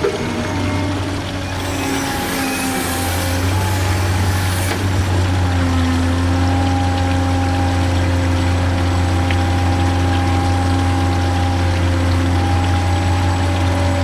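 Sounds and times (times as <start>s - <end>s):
small motor humming: 0.0s - 5.8s.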